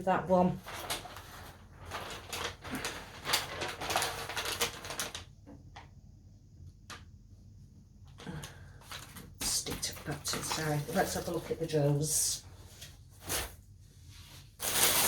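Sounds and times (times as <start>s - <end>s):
packaging rustling and crinkling: 0.5s - 5.4s, 8.2s - 13.6s, 14.2s - 15.0s.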